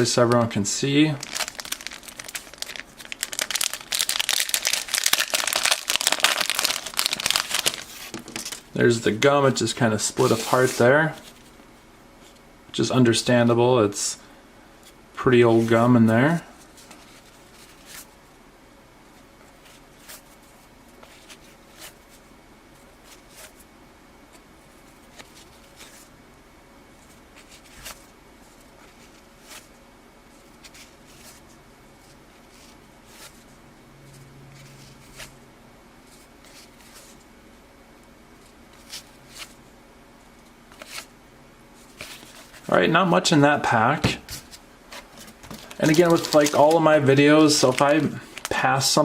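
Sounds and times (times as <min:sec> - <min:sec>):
wax paper wrapper crinkling: 0:00.2 - 0:09.2, 0:44.4 - 0:49.0
cardboard cards clicking and rustling: 0:01.2 - 0:08.6, 0:44.3 - 0:46.9.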